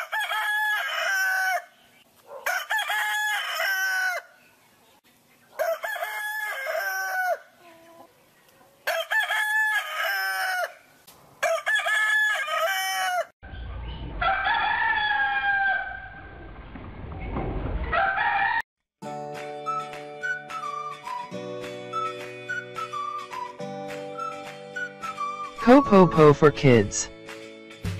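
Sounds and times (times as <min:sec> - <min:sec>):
rooster crowing: 0:00.0 - 0:01.7, 0:02.3 - 0:04.4, 0:05.6 - 0:07.5, 0:08.9 - 0:13.3, 0:14.2 - 0:16.2, 0:17.9 - 0:18.6
short tune: 0:25.6 - 0:27.1.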